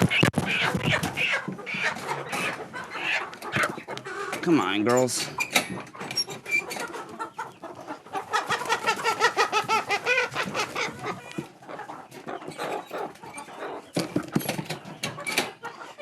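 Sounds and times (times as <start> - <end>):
hens squawking: 0.0 - 16.0
knocks and rustles: 13.9 - 15.6.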